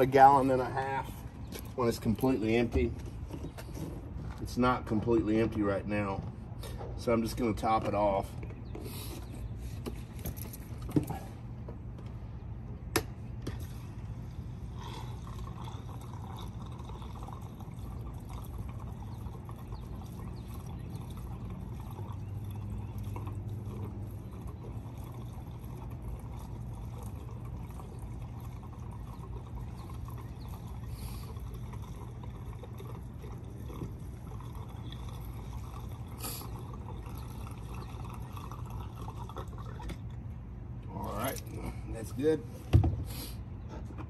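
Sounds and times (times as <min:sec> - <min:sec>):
gasoline pouring into tank: 0:13.6 - 0:40.2.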